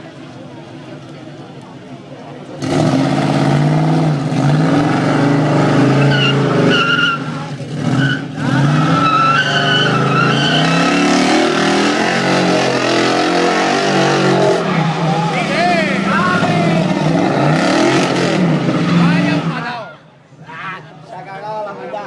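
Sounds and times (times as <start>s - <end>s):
car engine revving hard: 2.5s - 19.8s
tyres squealing: 4.4s - 21.0s.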